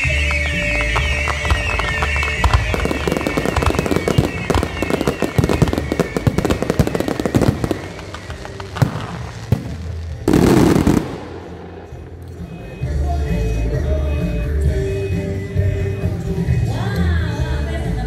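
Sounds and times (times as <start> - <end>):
fireworks bangs: 0.0 - 12.5
fireworks crackling: 0.0 - 12.6
fireworks whistling: 0.0 - 16.1.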